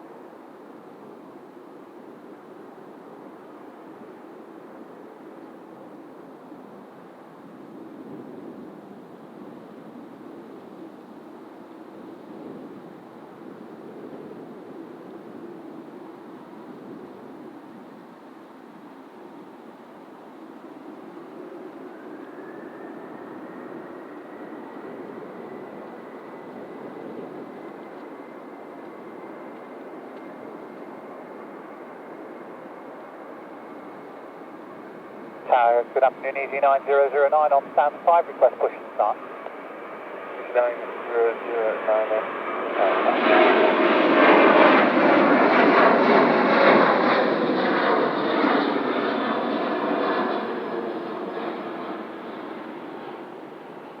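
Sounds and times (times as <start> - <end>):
jet engines running: 20.3 - 54.0.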